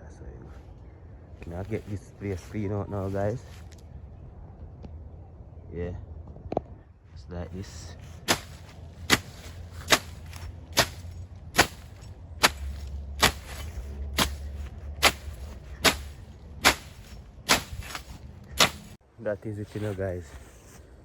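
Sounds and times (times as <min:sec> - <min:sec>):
machete swishing through grass: 0:08.0 - 0:19.0.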